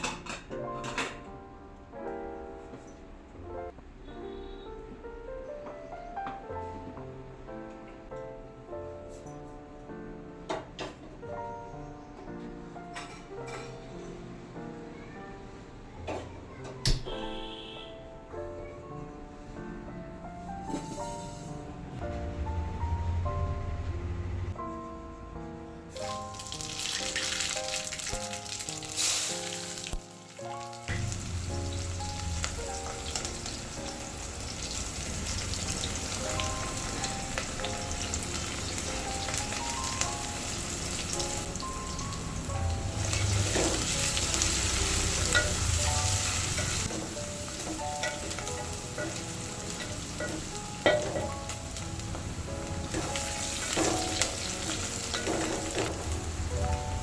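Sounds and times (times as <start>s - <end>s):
background music: 17.1s - 57.0s
food sizzling in oil: 25.9s - 57.0s.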